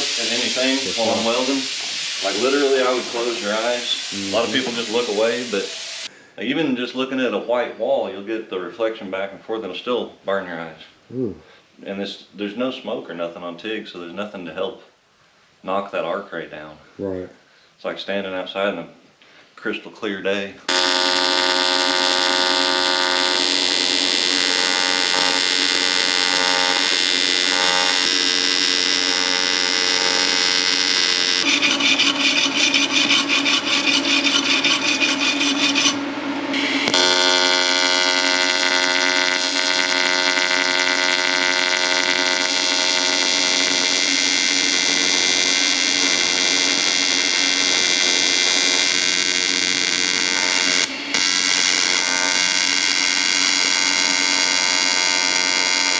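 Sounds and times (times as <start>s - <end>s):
welding arc buzzing: 0.0s - 6.1s, 20.7s - 55.9s.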